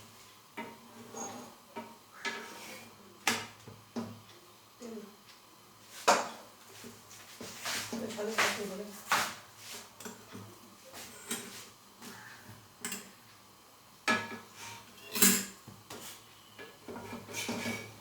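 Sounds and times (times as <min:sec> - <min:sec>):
utensil scraping a pan: 0:00.9 - 0:01.6, 0:02.2 - 0:03.0, 0:14.3 - 0:15.2, 0:16.9 - 0:18.0.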